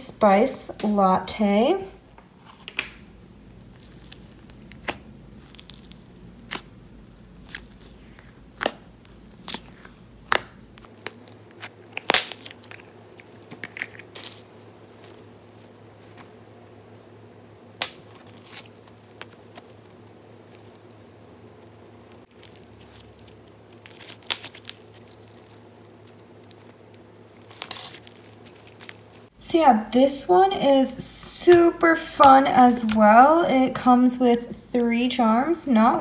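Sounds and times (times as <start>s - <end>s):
bubble wrap crackling: 3.5s - 16.4s, 17.8s - 29.4s.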